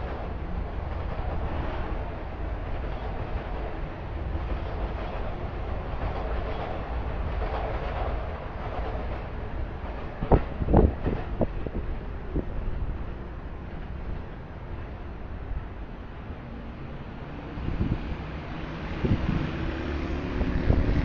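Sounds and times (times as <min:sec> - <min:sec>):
wind rumble on microphone: 0:00.0 - 0:13.1, 0:17.5 - 0:21.0
city traffic noise: 0:00.0 - 0:21.0.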